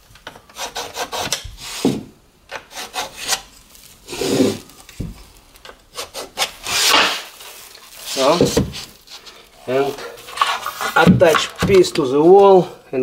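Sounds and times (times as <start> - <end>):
boards scraping together: 4.1 - 4.7, 5.9 - 12.0.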